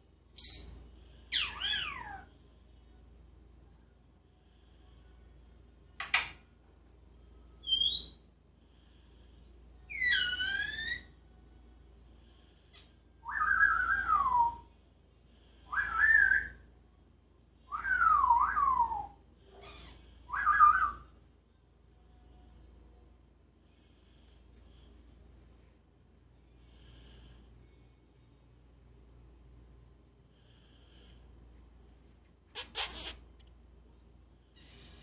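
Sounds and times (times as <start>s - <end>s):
parrot calls and chirps: 0.3s - 2.3s, 7.6s - 8.2s, 9.9s - 11.2s, 15.7s - 16.6s, 17.7s - 21.1s, 32.5s - 33.2s, 34.6s - 35.0s.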